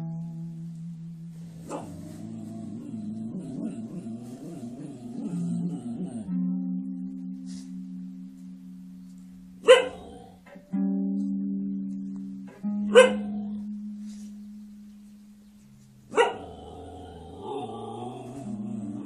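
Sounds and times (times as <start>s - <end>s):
plucked string notes: 0.0s - 19.0s
dog barking: 1.6s - 2.0s, 9.6s - 10.3s, 12.9s - 13.5s, 16.1s - 16.6s.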